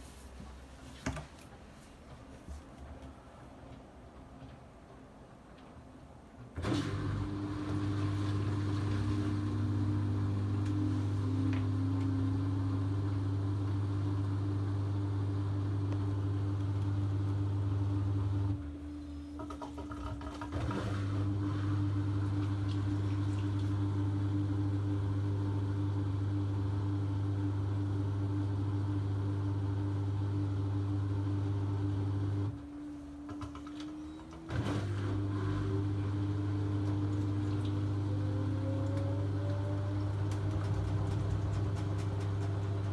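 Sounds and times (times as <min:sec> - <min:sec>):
machine hum: 0:21.2 - 0:42.9.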